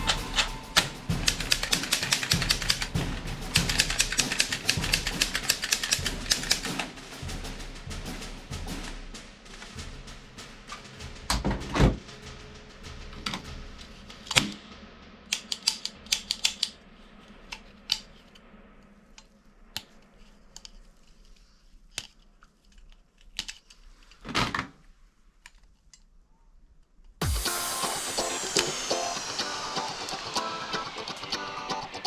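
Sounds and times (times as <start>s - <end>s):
toy gun clicks and snaps: 15.3s - 16.7s, 22.0s - 23.8s.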